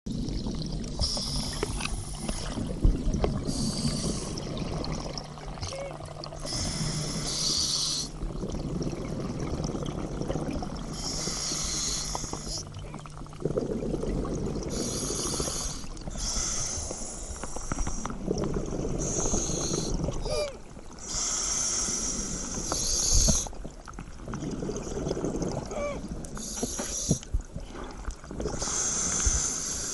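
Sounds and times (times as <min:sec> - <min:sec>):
bubbling exhale underwater: 0:00.1 - 0:29.9
hissing regulator inhale: 0:01.0 - 0:02.6, 0:03.4 - 0:04.5, 0:06.4 - 0:08.2, 0:10.9 - 0:12.7, 0:14.7 - 0:20.1, 0:21.0 - 0:23.6, 0:26.3 - 0:27.3, 0:28.5 - 0:29.9.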